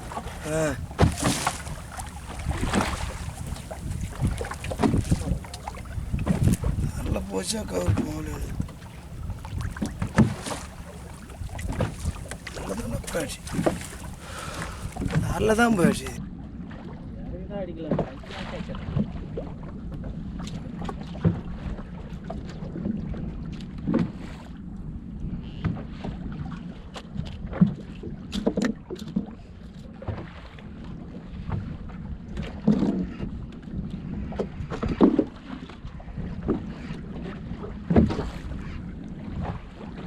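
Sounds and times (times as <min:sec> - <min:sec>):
boat low rumble: 0:00.0 - 0:16.2
knocks on boat: 0:00.0 - 0:16.2
wind buffeting microphone: 0:00.0 - 0:16.2.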